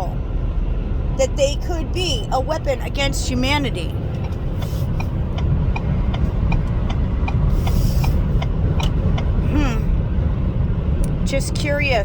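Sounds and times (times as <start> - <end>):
engine and road rumble: 0.0 - 12.0
light regular ticking: 4.0 - 9.4.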